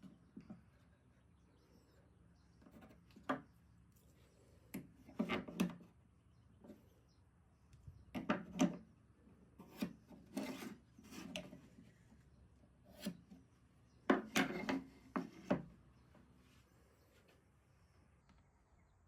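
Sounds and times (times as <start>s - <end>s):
wood being scraped by hand: 9.6s - 11.6s.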